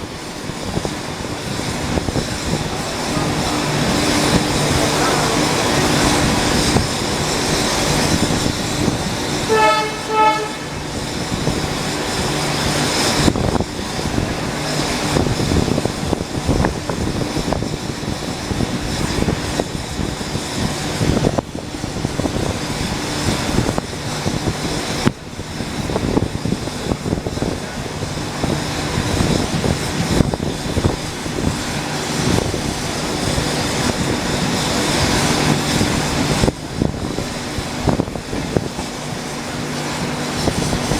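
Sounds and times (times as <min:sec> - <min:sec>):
train wheels rumbling and clattering: 0:00.0 - 0:40.9
locomotive horn toots: 0:09.3 - 0:11.6.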